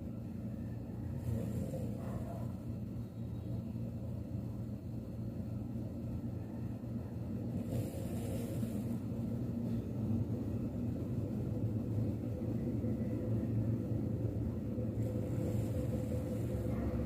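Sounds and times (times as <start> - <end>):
dog snoring: 7.5 - 8.9.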